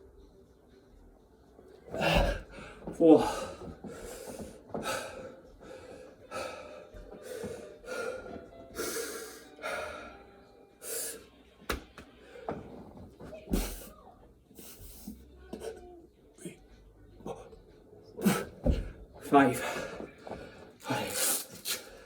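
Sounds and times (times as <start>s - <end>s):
man breathing hard: 2.0s - 11.3s.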